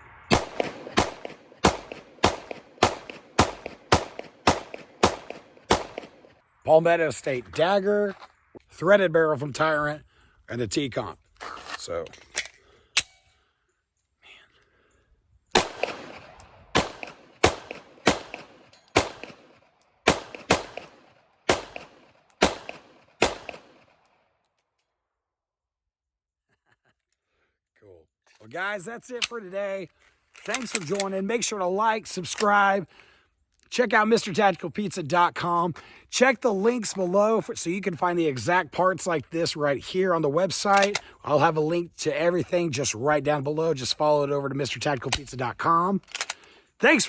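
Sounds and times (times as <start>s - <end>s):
pistol shots: 0.3s - 6.3s, 15.5s - 23.9s.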